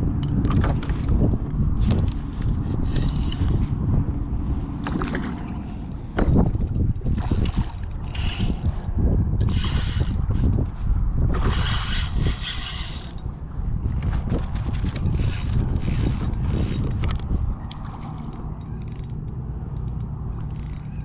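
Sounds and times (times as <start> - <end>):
fishing reel whirring and clicking: 5.0 - 10.7, 11.4 - 13.4, 14.7 - 21.0.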